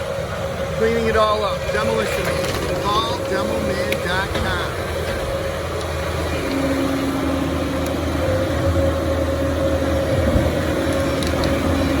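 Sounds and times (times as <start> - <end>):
constant whine: 0.0 - 12.0
machine engine hum: 0.0 - 12.0.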